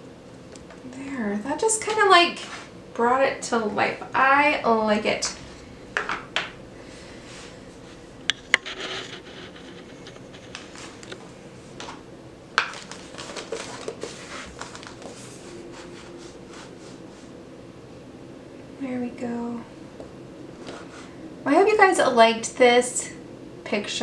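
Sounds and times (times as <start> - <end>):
rubbing and scratching on table: 7.3 - 11.1, 13.2 - 17.3.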